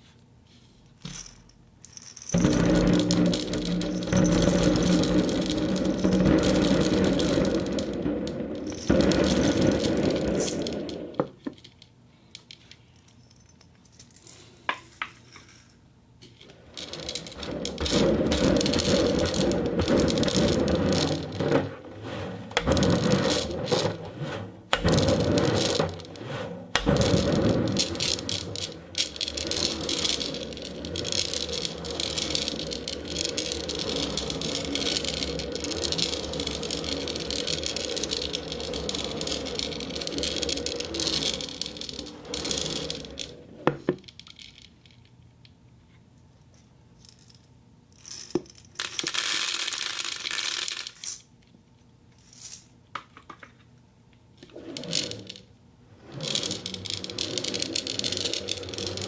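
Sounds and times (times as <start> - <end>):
ceramic balls rattling and clicking: 1.1 - 21.9, 22.5 - 45.2, 48.0 - 51.3, 54.4 - 59.0.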